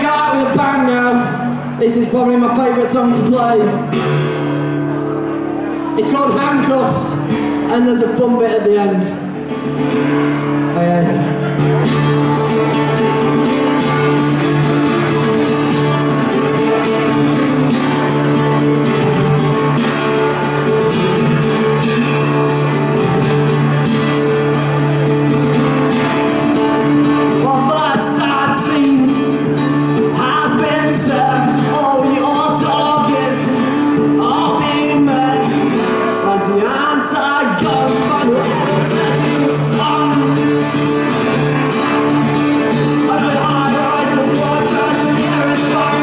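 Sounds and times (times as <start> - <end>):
person singing: 26.8 - 41.1, 42.8 - 46.0.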